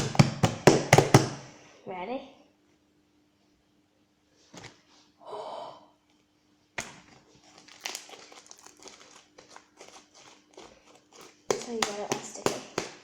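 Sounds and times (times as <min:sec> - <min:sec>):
wet sticky slime crackling: 0:06.8 - 0:13.0.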